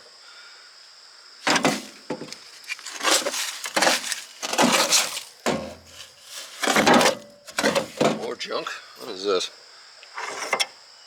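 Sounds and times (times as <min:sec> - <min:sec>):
tools clattering and scraping: 0:01.5 - 0:08.3, 0:10.2 - 0:10.7.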